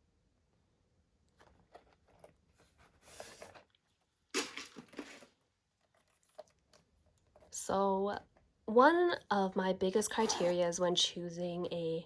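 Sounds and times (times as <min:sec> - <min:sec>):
rustling scrapes: 0:01.4 - 0:06.5.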